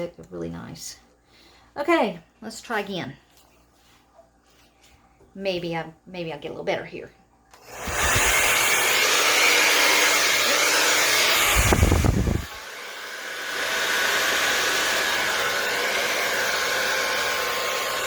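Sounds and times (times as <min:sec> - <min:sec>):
hair dryer blowing: 0:07.6 - 0:18.0.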